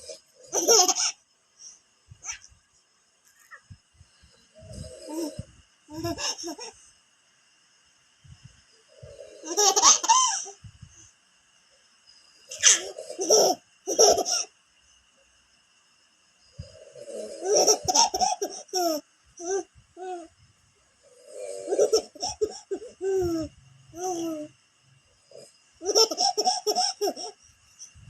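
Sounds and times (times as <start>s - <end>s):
adult snoring sounds: 0.0s - 0.6s, 4.2s - 5.5s, 8.9s - 9.6s, 12.8s - 13.2s, 16.5s - 17.9s, 21.0s - 23.4s
baby laughing: 0.4s - 1.2s, 5.1s - 6.8s, 9.4s - 10.5s, 12.5s - 14.5s, 17.3s - 20.3s, 21.6s - 24.5s, 25.8s - 27.4s.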